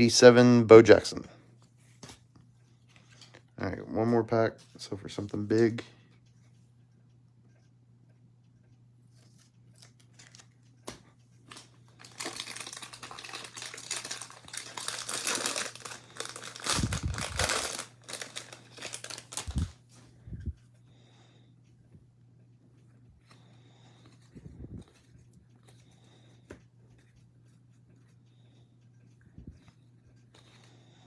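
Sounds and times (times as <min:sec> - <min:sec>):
faint steady hum: 0:00.0 - 0:31.0
foil wrapper crinkling and tearing: 0:11.5 - 0:19.8.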